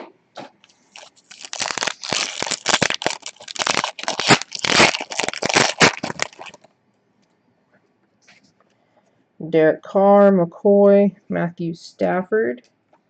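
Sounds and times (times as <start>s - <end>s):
card pack wrapper tearing: 0.9s - 6.7s.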